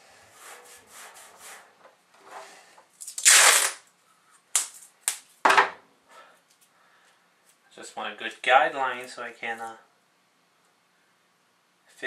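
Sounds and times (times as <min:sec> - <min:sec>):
tape rubbing on metal lid: 0:00.4 - 0:02.5
tape ripping off roll: 0:03.0 - 0:03.9, 0:04.5 - 0:05.3
tape tearing rasps: 0:03.0 - 0:03.9, 0:04.5 - 0:05.3.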